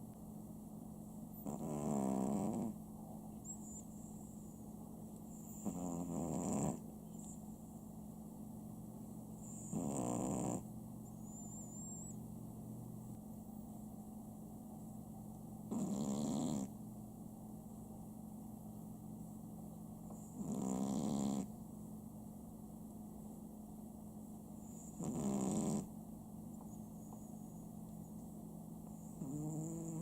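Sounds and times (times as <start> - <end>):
steady low hum: 0.0 - 30.0
dog snoring: 1.4 - 2.8, 5.3 - 7.3, 9.4 - 12.2, 15.7 - 16.8, 20.1 - 21.5, 24.6 - 25.9, 28.9 - 30.0.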